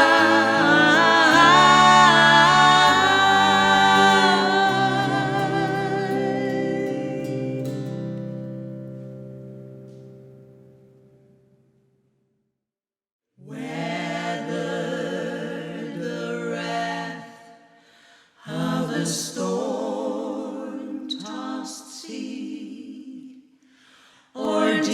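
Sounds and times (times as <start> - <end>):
women singing a cappella: 0.0 - 8.0, 13.4 - 17.7, 18.4 - 23.6, 24.2 - 24.9
acoustic guitar chord: 0.0 - 11.6.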